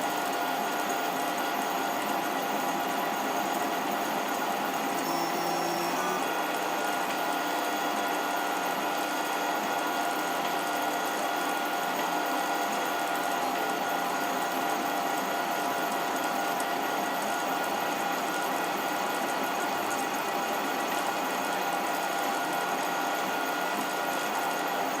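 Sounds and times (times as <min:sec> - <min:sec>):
stepper motors whining: 0:05.0 - 0:06.3
mechanical whirr: 0:05.0 - 0:06.5.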